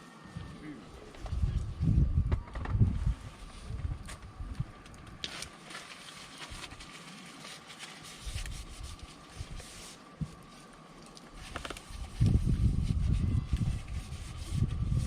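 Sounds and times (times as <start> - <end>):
campfire crackling: 3.2 - 12.2.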